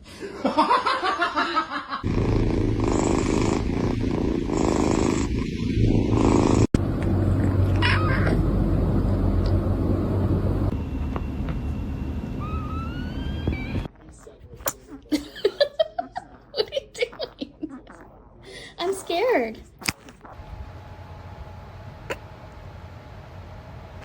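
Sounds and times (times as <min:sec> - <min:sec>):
cat purring: 0:02.0 - 0:08.7.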